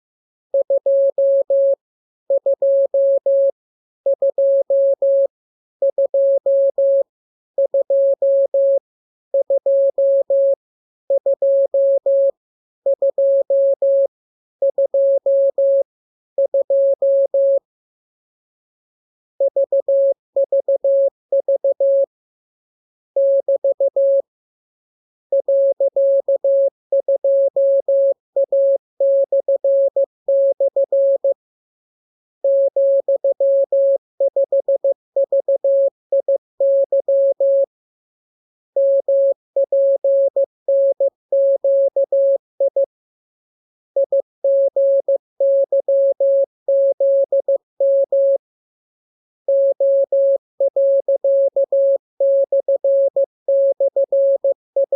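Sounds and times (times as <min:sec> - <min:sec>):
morse code beeps: 0:00.6 - 0:01.8, 0:02.4 - 0:03.5, 0:04.1 - 0:05.3, 0:05.9 - 0:07.0, 0:07.6 - 0:08.8, 0:09.4 - 0:10.6, 0:11.2 - 0:14.1, 0:14.7 - 0:15.8, 0:16.4 - 0:17.6, 0:19.4 - 0:22.1, 0:38.8 - 0:42.8, 0:52.4 - 0:54.9.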